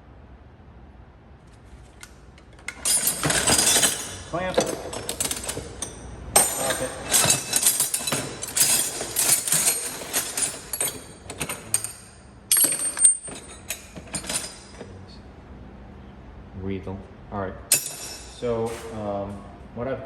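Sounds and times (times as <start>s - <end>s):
metal tools clinking and clattering: 2.6s - 14.9s, 17.7s - 19.0s.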